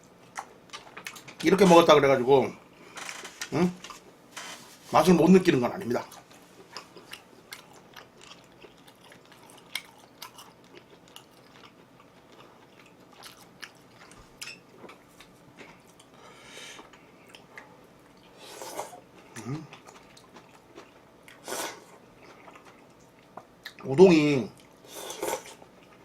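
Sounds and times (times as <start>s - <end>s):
chewing crunchy food: 0.0s - 1.4s, 6.0s - 16.2s, 16.8s - 23.9s, 24.5s - 26.0s.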